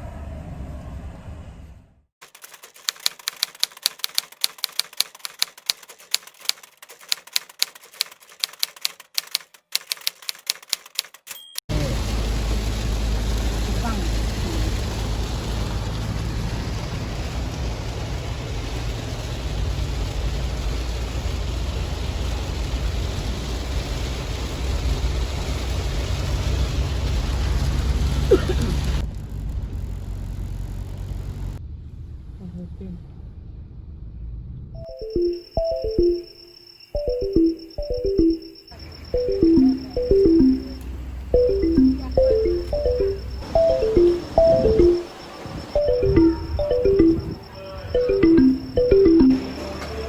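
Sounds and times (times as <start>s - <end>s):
traffic noise: 0.0s - 2.0s, 11.7s - 32.4s, 49.4s - 50.0s
typewriter keys clacking: 2.2s - 11.6s.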